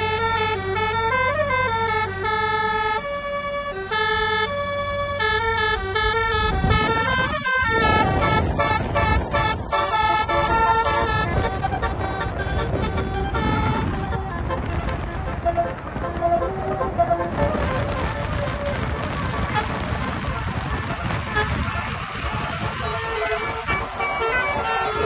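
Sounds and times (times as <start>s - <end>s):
bus multi-tone horn melody: 0.0s - 25.0s
loud rushing noise: 6.6s - 25.0s.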